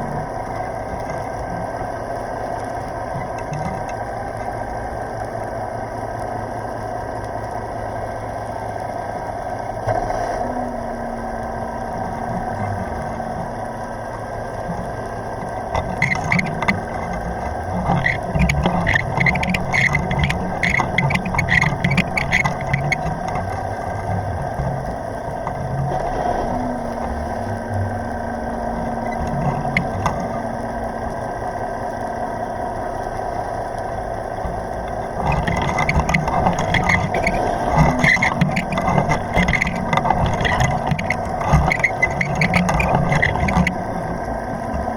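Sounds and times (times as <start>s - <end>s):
boat engine hum underwater: 0.0s - 44.9s
low tone: 0.0s - 44.9s
rapid clicking and rattling: 14.5s - 26.0s, 33.0s - 44.9s.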